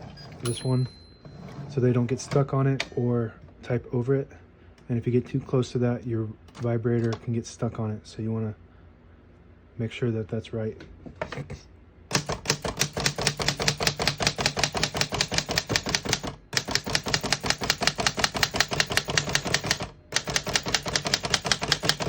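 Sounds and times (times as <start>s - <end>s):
typewriter keystrokes: 12.1s - 22.0s.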